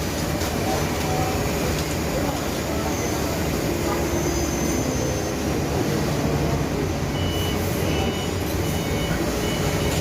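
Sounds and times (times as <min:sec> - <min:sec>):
reversing alarm beeping: 0:07.1 - 0:10.0.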